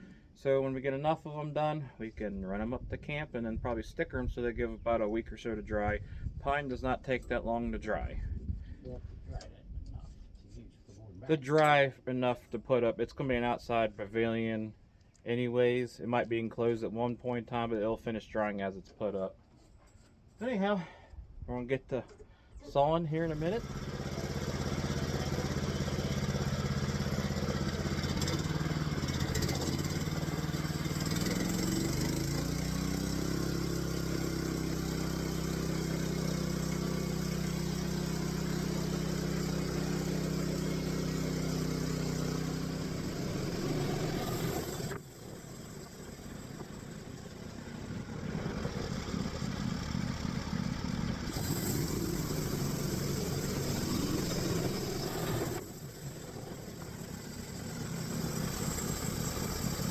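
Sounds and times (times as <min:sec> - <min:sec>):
sawmill engine running: 0:23.0 - 0:59.9.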